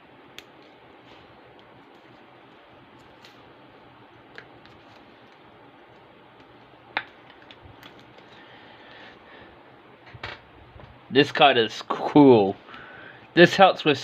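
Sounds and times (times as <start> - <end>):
faint steady hiss: 0.0 - 14.0
clicks handling cards and packaging: 4.3 - 8.4.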